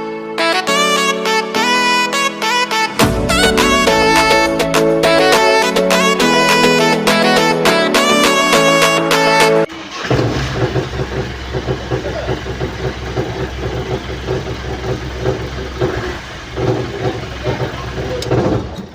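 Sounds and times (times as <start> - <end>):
pickup engine idling: 9.7 - 18.4.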